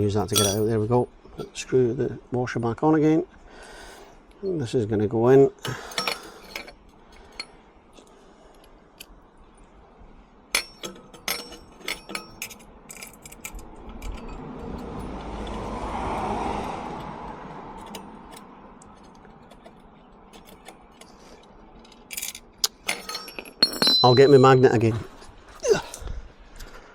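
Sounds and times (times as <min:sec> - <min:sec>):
metal clinks of hand tools: 0:00.2 - 0:00.8, 0:05.7 - 0:07.6, 0:10.6 - 0:15.7, 0:21.9 - 0:25.0.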